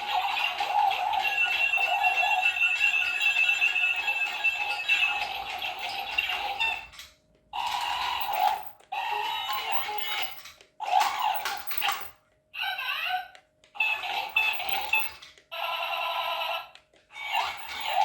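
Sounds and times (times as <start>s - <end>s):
toy robot electronic warbling: 7.6s - 12.0s, 13.8s - 18.0s.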